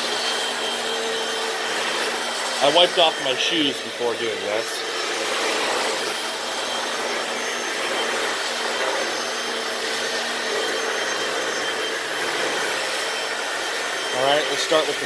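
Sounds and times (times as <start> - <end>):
floor cleaner vacuum motor: 0.0 - 15.0.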